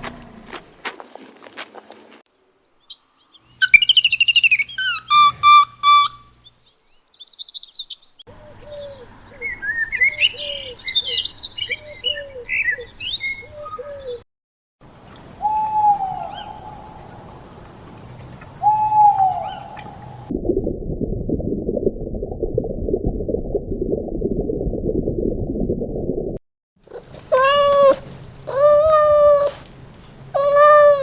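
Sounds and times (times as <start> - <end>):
lower bird call: 2.8 - 14.2, 26.9 - 29.7, 30.3 - 31.0
birds chirping and whistling: 2.9 - 14.2.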